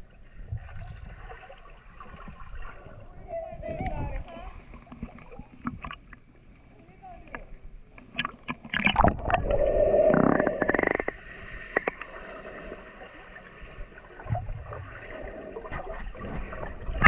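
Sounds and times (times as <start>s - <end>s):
water splashing and sloshing: 0.0s - 17.0s
water gurgling: 8.0s - 17.0s.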